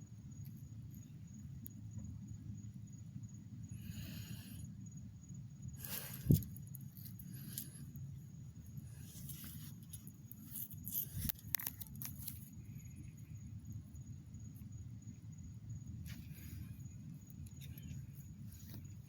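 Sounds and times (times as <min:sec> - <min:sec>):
steady low rumble: 0:00.0 - 0:19.0
crackles clicks and scrapes: 0:05.8 - 0:08.0, 0:08.9 - 0:13.2, 0:16.0 - 0:19.0.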